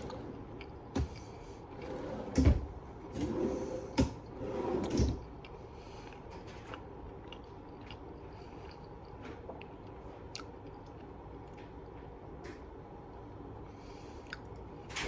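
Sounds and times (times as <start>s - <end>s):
person chewing food: 5.4s - 11.2s, 14.2s - 14.6s.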